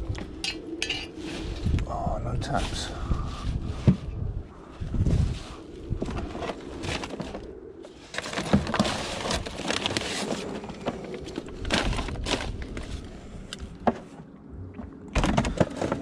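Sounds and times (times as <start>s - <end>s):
rummaging through scrap: 6.0s - 13.1s.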